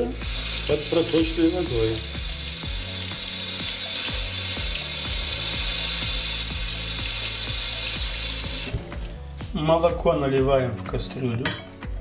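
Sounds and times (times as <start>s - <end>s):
tap water splashing: 0.0s - 9.2s
background music with beat: 0.0s - 12.0s.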